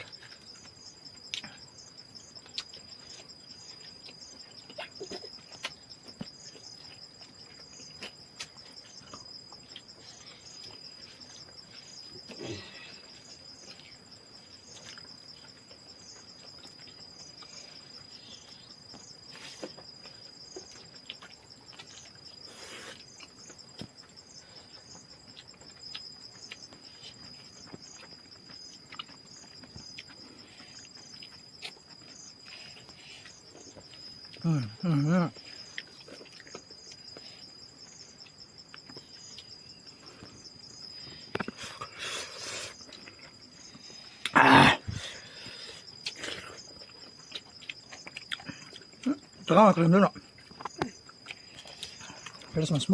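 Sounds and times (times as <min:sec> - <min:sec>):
crickets and insects trilling: 0:00.0 - 0:52.9.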